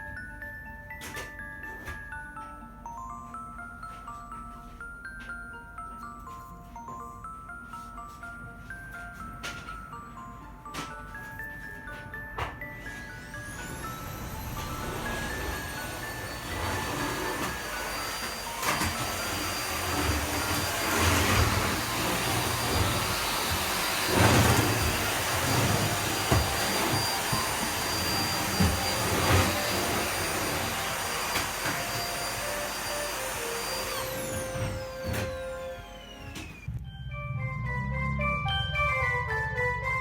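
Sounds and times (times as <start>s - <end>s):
vacuum cleaner motor whine: 6.0s - 36.8s.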